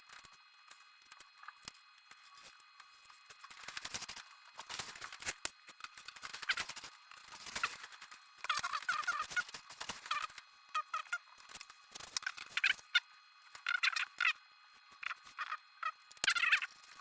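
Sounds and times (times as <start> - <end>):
foam board squeaks: 8.5 - 11.2.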